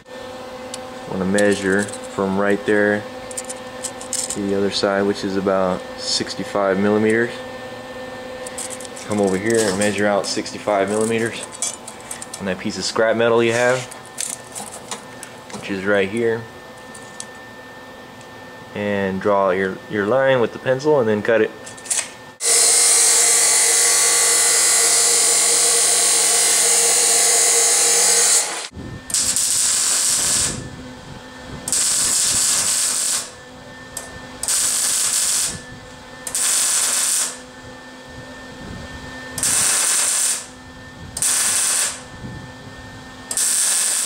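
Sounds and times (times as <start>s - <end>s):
welder crackling: 0.7s - 5.3s, 8.4s - 16.2s, 24.3s - 30.6s, 31.7s - 33.4s, 34.0s - 35.6s, 36.2s - 37.4s, 39.4s - 40.5s, 41.2s - 42.0s, 43.3s - 44.0s
power tool cutting metal: 8.4s - 12.5s, 21.8s - 30.7s, 31.7s - 33.4s, 34.0s - 37.4s, 39.3s - 40.6s, 41.2s - 42.1s, 43.2s - 44.0s.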